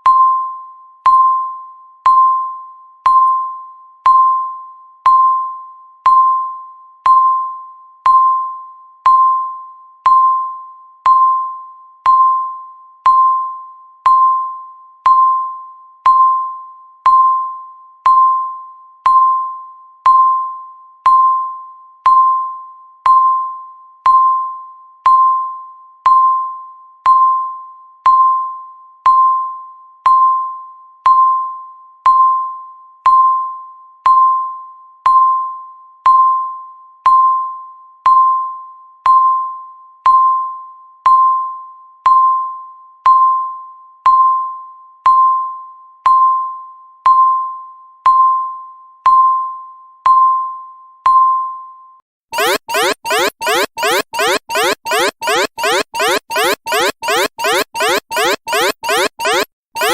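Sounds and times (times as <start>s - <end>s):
countdown timer beeps: 52.4s - 59.9s.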